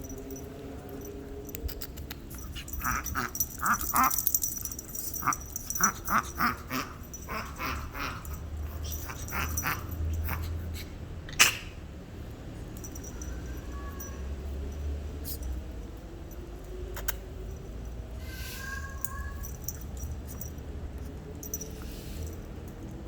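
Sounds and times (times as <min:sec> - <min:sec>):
puppy hiccuping: 0:02.4 - 0:11.8.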